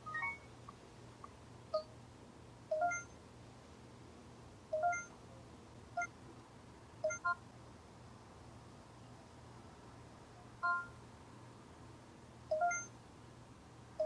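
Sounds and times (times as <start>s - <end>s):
short electronic beeps: 0.0s - 0.5s, 2.7s - 3.2s, 4.8s - 5.1s, 7.0s - 7.4s, 10.6s - 10.9s, 12.5s - 12.9s.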